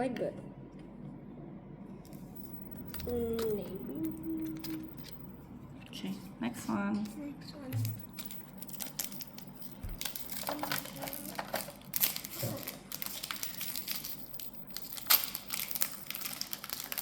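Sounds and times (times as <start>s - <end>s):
foil wrapper crinkling: 7.8s - 17.0s.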